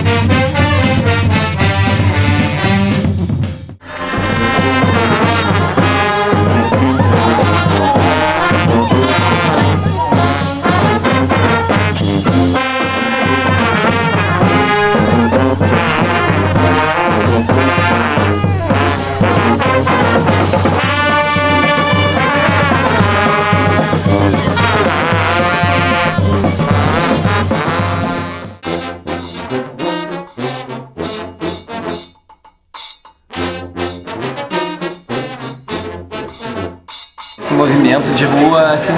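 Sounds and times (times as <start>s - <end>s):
brass band playing: 0.0s - 32.2s, 33.3s - 38.9s.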